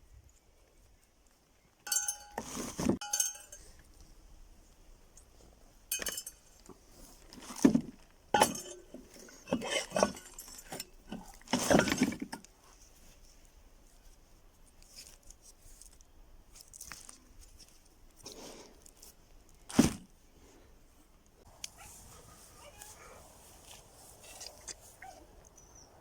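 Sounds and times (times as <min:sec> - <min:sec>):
metal parts clinking: 0:01.9 - 0:03.7, 0:05.9 - 0:06.6, 0:08.4 - 0:12.3.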